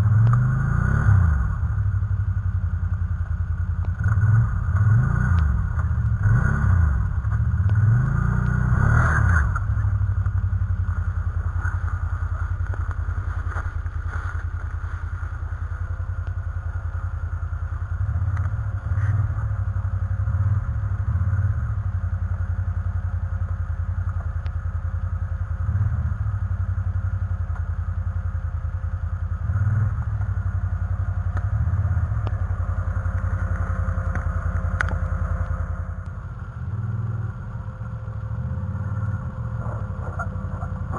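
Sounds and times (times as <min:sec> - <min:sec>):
engine revving: 0:00.0 - 0:01.9, 0:03.9 - 0:10.2, 0:29.4 - 0:40.9.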